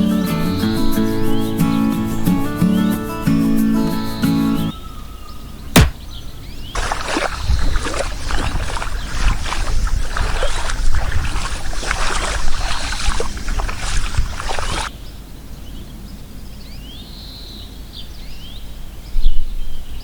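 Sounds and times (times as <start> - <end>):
sharp click: 5.8 - 6.1
water splashing and trickling: 6.8 - 14.9.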